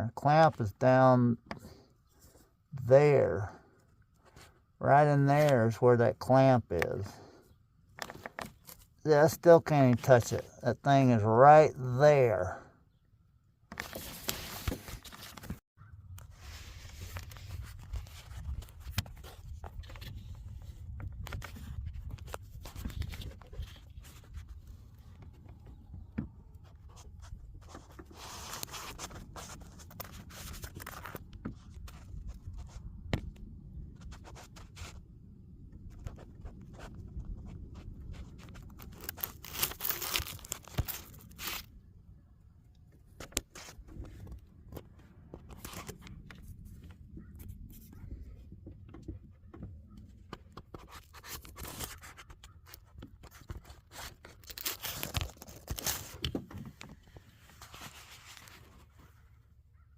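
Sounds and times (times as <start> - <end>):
hands and metal handling noises: 7.9 - 9.0
rustling scrapes: 13.8 - 15.6, 16.3 - 25.4, 26.6 - 32.9, 50.8 - 59.3.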